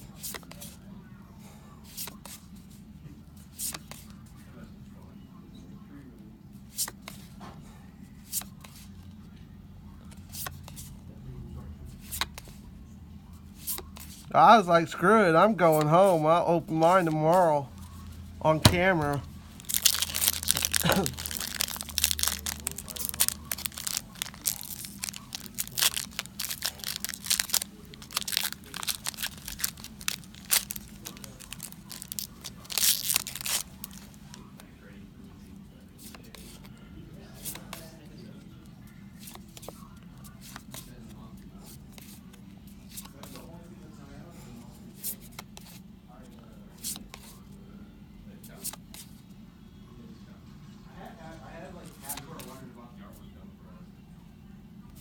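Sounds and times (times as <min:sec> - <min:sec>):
low steady hum: 0:11.2 - 0:39.2
foil wrapper crinkling: 0:18.5 - 0:34.6.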